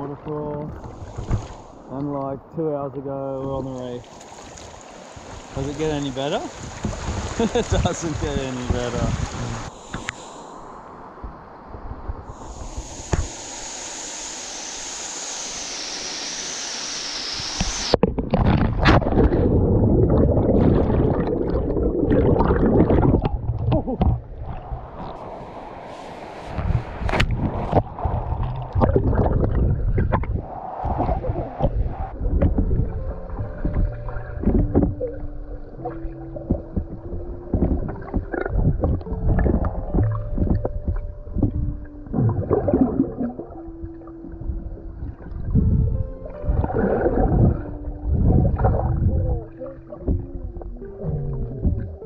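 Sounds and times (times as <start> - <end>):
background music with held notes: 32.2 - 52.0.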